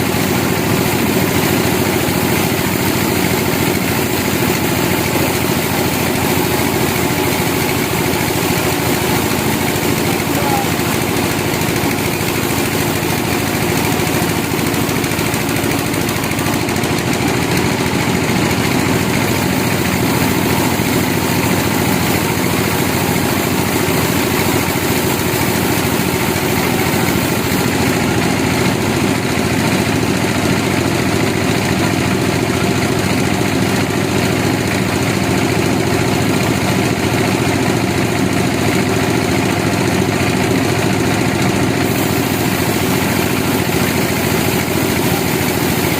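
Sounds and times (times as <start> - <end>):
sawmill machinery drone: 0.0 - 45.9.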